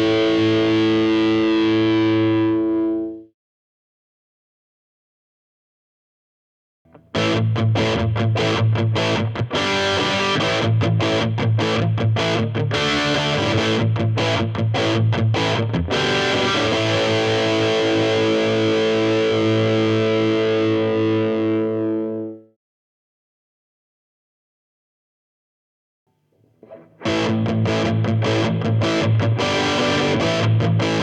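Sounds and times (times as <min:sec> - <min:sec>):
distorted electric guitar: 0:00.0 - 0:03.2, 0:06.9 - 0:22.4, 0:26.6 - 0:31.0.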